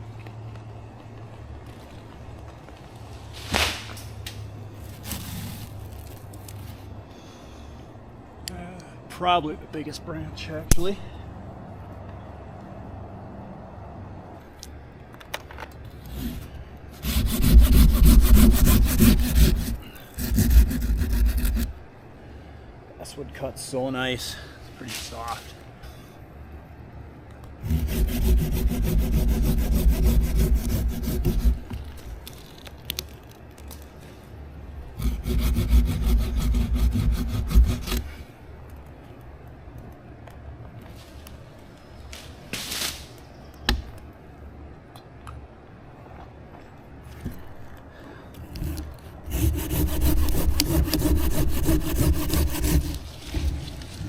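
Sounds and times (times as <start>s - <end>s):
saw cutting wood: 16.0s - 21.8s, 27.6s - 32.2s, 35.0s - 38.2s, 48.5s - 54.0s.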